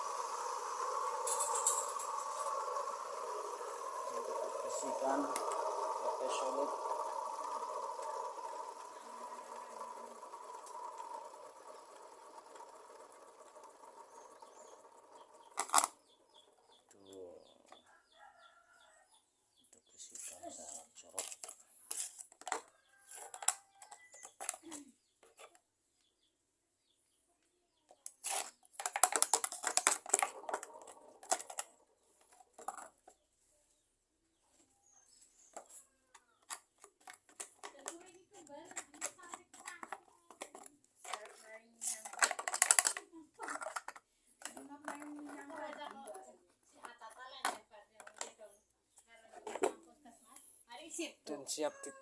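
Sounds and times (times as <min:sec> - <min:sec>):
scraping and clicking in grater chute: 0:00.0 - 0:16.0
motor humming: 0:00.0 - 0:16.9.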